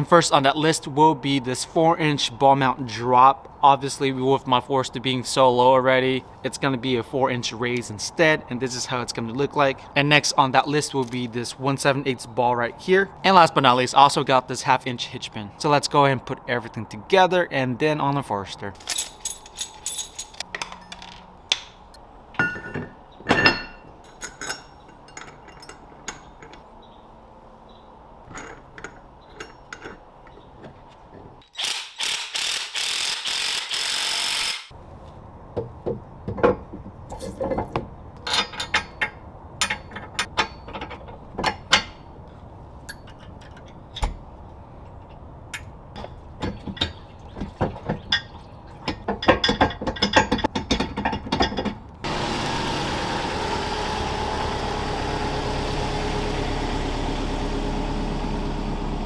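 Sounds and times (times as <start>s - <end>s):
metal knocks: 22.4s - 26.6s
ratchet wrench clicking: 31.5s - 34.7s.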